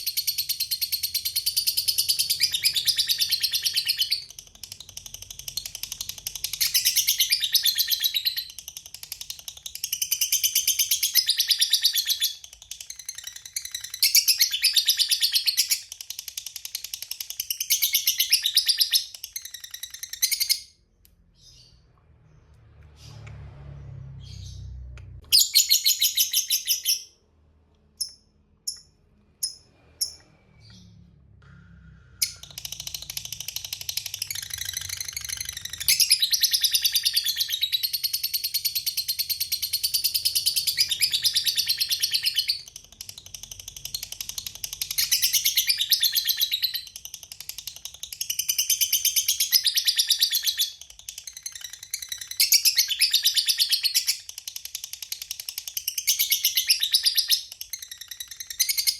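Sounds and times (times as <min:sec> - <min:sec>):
lovebird high-pitched trilling: 0:00.0 - 0:16.0, 0:17.5 - 0:20.8, 0:25.3 - 0:27.1, 0:32.2 - 0:42.7, 0:56.0 - 0:58.9.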